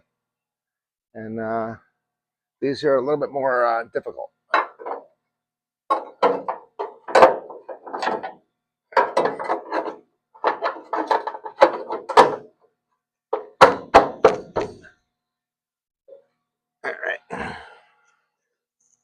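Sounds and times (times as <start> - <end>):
steel panel knocks and clanks: 4.5 - 5.1, 5.9 - 12.6, 13.3 - 14.9.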